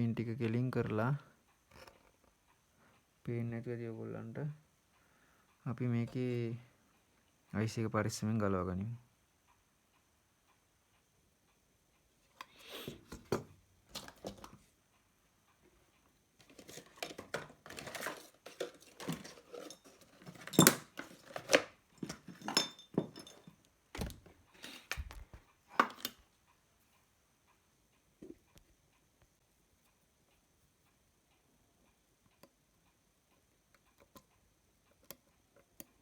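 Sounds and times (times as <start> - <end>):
metal tools clicking and scraping: 16.4 - 23.6.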